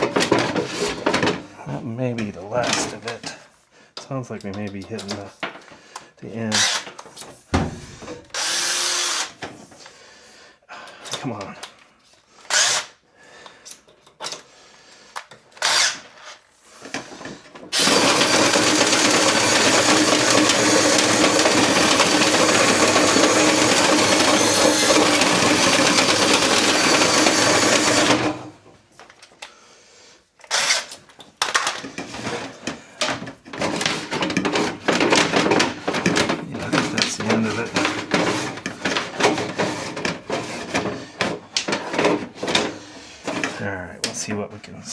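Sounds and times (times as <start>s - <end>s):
power drill spinning brush: 7.9s - 9.4s, 12.4s - 12.9s, 15.6s - 28.5s, 36.6s - 43.6s.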